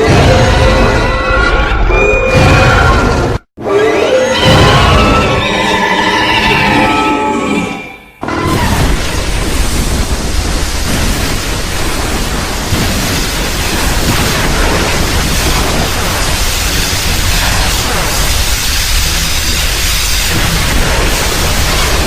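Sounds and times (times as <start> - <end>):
deep rumble: 8.4 - 22.0
loud steady rushing noise: 8.8 - 22.0.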